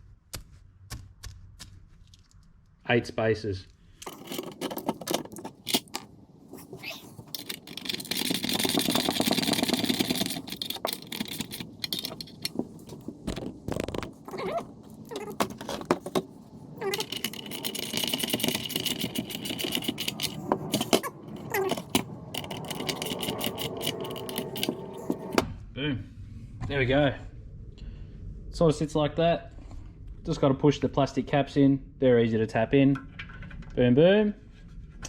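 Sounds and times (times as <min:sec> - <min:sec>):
metal parts clinking and scraping: 0:04.0 - 0:25.4.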